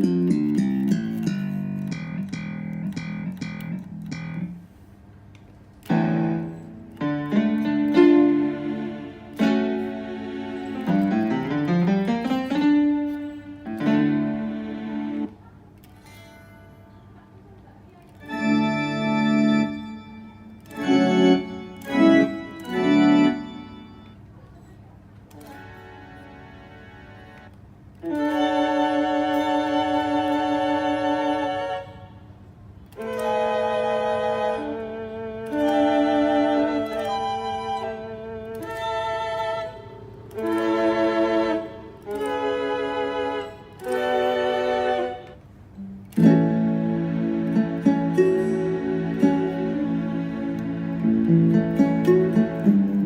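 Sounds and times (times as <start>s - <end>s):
keyboard-like synth chords: 0.0s - 4.7s, 5.8s - 15.4s, 18.2s - 24.2s, 32.9s - 53.0s
plucked guitar-like synth notes: 0.0s - 4.7s, 5.8s - 10.0s, 18.2s - 24.2s, 45.8s - 53.0s.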